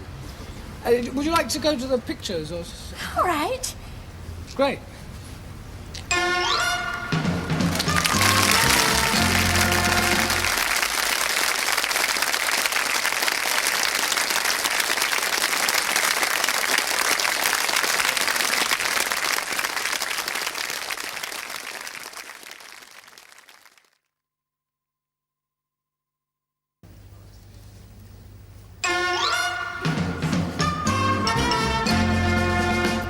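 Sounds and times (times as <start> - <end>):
short burst of music: 6.1 - 10.8
audience applauding: 7.4 - 24.0.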